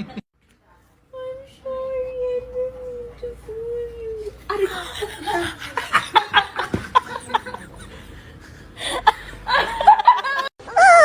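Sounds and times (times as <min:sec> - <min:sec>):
person laughing: 0:04.5 - 0:11.0.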